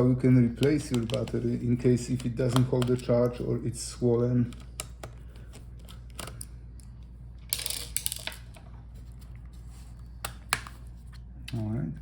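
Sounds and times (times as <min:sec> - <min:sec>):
plastic laptop parts clicking: 0:00.6 - 0:03.1, 0:04.4 - 0:06.5.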